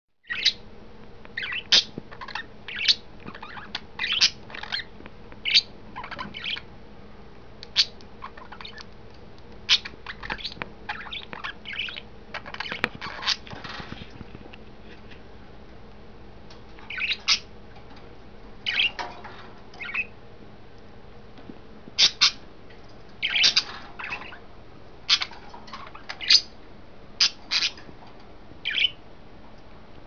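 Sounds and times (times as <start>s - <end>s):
budgerigars chirping: 0.2s - 0.6s, 1.4s - 6.6s, 7.7s - 8.9s, 9.7s - 13.6s, 16.9s - 17.5s, 18.6s - 19.1s, 19.8s - 20.2s, 22.0s - 22.4s, 23.2s - 24.4s, 25.1s - 26.6s, 27.2s - 27.8s, 28.6s - 29.0s.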